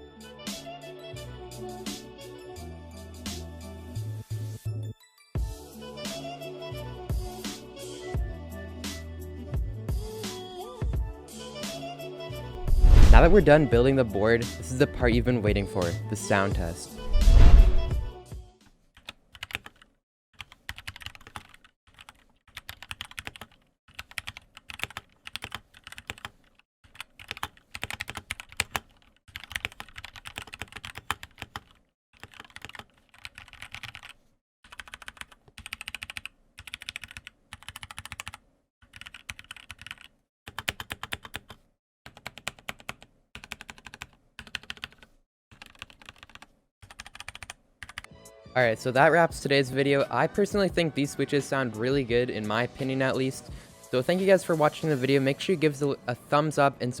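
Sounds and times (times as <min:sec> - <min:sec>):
mechanical keyboard typing: 0:19.0 - 0:48.1.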